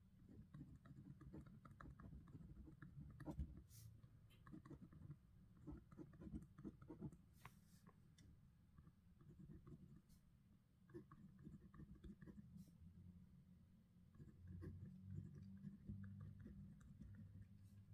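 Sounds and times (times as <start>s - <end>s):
pen writing on paper: 0.3s - 3.6s, 4.3s - 7.2s, 9.2s - 10.0s, 10.9s - 12.4s, 14.2s - 17.5s.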